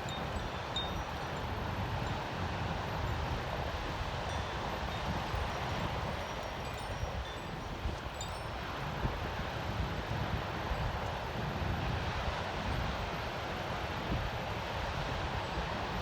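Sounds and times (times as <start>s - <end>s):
wind chime tinkling: 0.0s - 1.2s, 4.3s - 8.6s.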